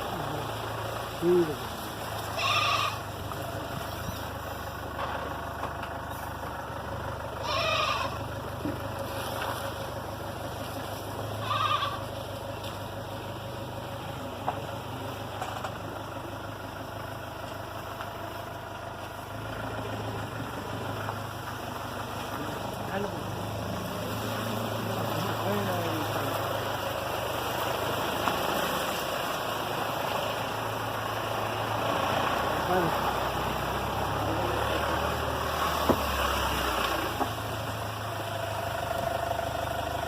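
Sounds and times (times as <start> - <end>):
idling engine hum: 0.0 - 40.0
goat bleating: 2.2 - 3.1, 7.3 - 8.2, 11.4 - 12.1.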